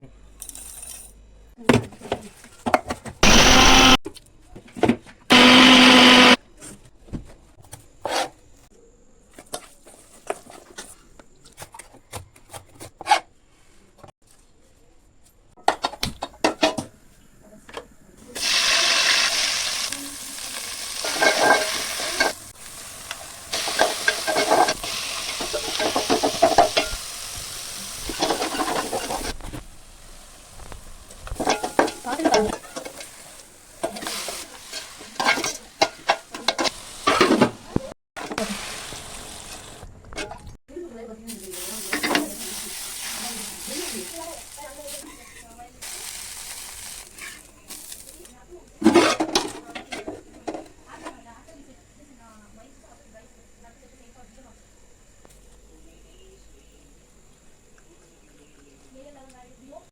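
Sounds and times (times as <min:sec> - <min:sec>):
loud buzzing hum: 0:03.2 - 0:04.0, 0:05.3 - 0:06.4
food sizzling in a pan: 0:18.3 - 0:39.8, 0:41.3 - 0:48.3
utensil scraping a pan: 0:20.9 - 0:22.6, 0:23.5 - 0:29.6, 0:48.8 - 0:51.2
kitchen utensils clicking: 0:21.0 - 0:22.5, 0:23.5 - 0:27.0, 0:28.0 - 0:29.4, 0:31.3 - 0:33.2, 0:33.8 - 0:37.5.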